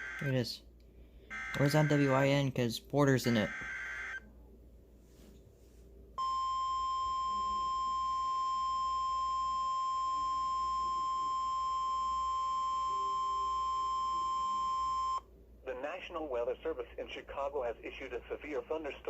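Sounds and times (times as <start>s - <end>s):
steady high alarm tone: 0.0s - 0.5s, 1.3s - 2.4s, 3.2s - 4.2s, 6.2s - 15.2s.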